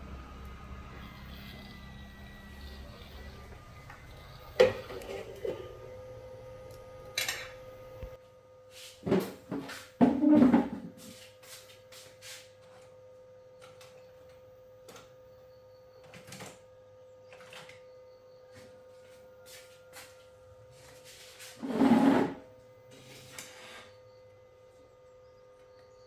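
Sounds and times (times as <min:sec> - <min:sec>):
faint steady hum: 0:00.0 - 0:11.8.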